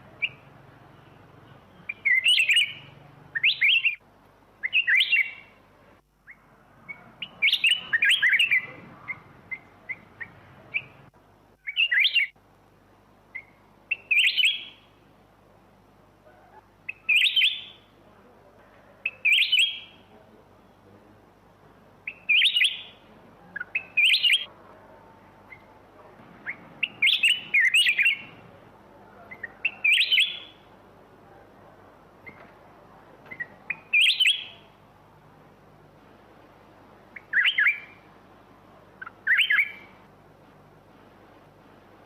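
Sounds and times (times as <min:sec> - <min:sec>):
bird singing warbled phrases: 0:00.0 - 0:04.0, 0:04.6 - 0:05.6, 0:06.2 - 0:12.4, 0:13.3 - 0:15.0, 0:16.4 - 0:18.0, 0:19.0 - 0:20.8, 0:22.0 - 0:24.5, 0:26.4 - 0:30.8, 0:33.2 - 0:34.8, 0:37.1 - 0:38.1, 0:38.8 - 0:40.0.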